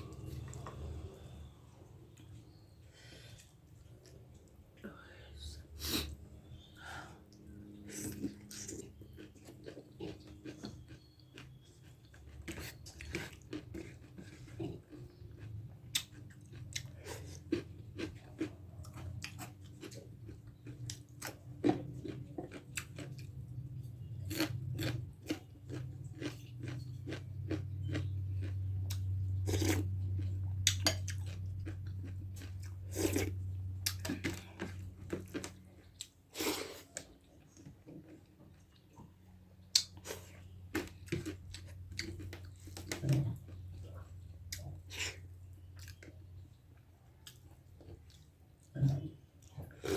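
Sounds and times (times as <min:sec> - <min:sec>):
person chewing and biting: 0:07.9 - 0:37.3, 0:39.6 - 0:46.1.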